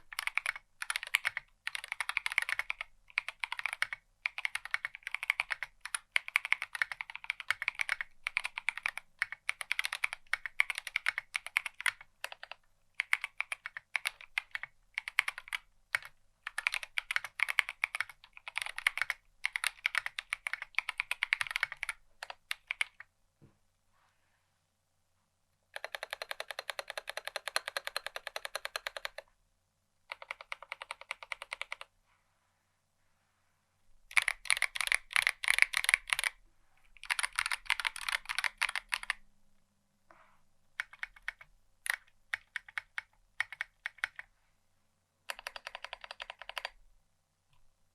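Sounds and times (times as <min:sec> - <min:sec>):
mechanical keyboard typing: 0:00.0 - 0:23.1, 0:25.7 - 0:29.3, 0:30.1 - 0:31.9, 0:34.1 - 0:36.4, 0:37.0 - 0:39.2, 0:40.8 - 0:44.3, 0:45.3 - 0:46.8.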